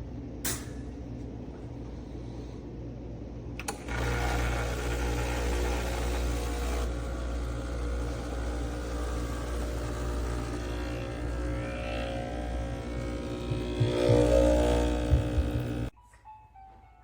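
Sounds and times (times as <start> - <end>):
espresso machine humming: 3.6 - 15.9
pump motor running: 3.6 - 15.9.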